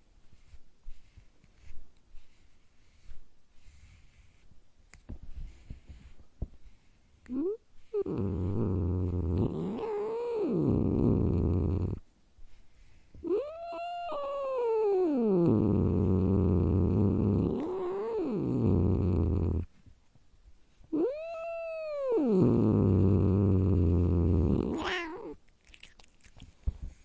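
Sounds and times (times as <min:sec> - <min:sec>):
cat growling: 0:07.3 - 0:12.0, 0:13.2 - 0:19.7, 0:20.9 - 0:26.4
cat yowling: 0:13.3 - 0:15.4, 0:21.0 - 0:22.8, 0:24.6 - 0:25.4.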